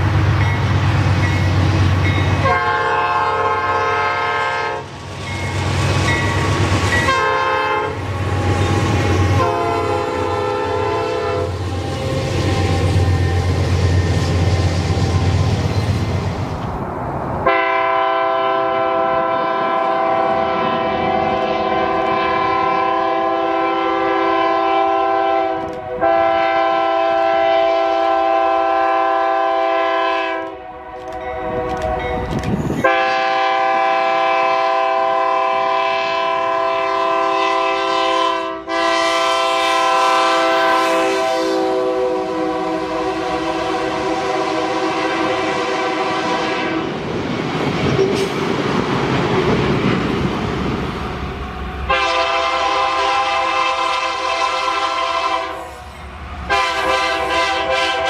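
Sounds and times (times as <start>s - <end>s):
train air horn blasts: 2.4s - 4.9s, 6.3s - 14.2s, 17.4s - 32.2s, 32.8s - 47.0s, 51.8s - 55.9s, 56.5s - 58.0s.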